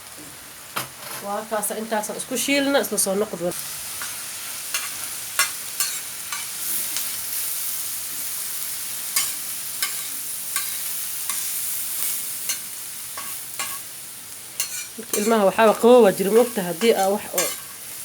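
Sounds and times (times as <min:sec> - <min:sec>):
food sizzling in a pan: 0:00.0 - 0:18.0
utensil scraping a pan: 0:04.0 - 0:06.6, 0:14.6 - 0:17.9.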